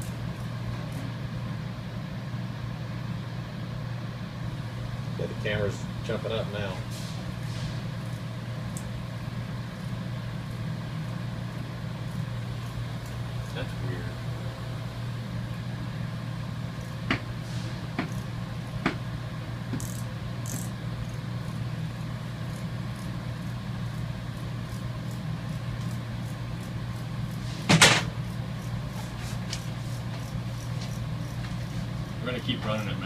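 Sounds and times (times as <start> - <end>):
furnace equipment humming: 0.0 - 33.0
loud short clunk: 27.7 - 28.1.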